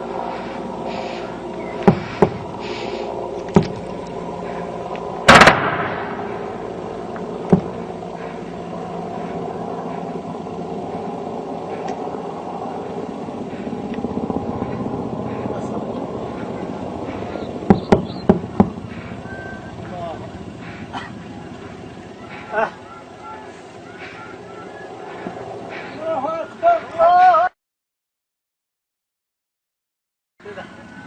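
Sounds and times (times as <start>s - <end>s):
droning hum: 0.0s - 27.5s, 30.4s - 31.0s
sharp bangs: 1.8s - 2.5s, 5.2s - 6.8s, 7.4s - 8.5s, 16.2s - 20.9s.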